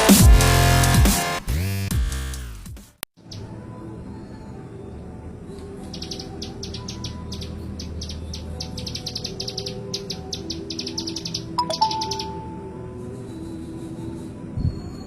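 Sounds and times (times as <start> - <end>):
bird singing trilled notes: 5.5 - 13.5.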